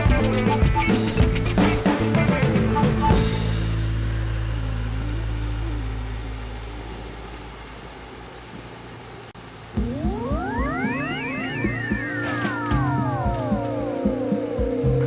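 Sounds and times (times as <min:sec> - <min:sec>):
background music with drum beat: 0:00.0 - 0:04.1, 0:09.7 - 0:15.0
wavering tone: 0:00.0 - 0:08.5, 0:09.8 - 0:15.0
held low note: 0:01.3 - 0:08.4, 0:09.7 - 0:15.0.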